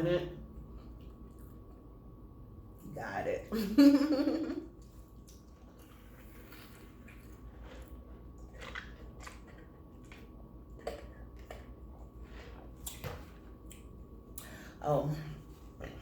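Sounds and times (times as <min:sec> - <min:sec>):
person chewing: 0:04.8 - 0:14.5.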